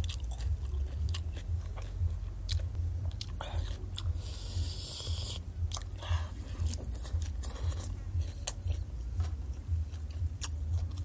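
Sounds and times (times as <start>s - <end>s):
low steady hum: 0.0s - 11.0s
person chewing food: 0.0s - 11.0s
wet mouth clicks and smacks: 5.1s - 6.0s.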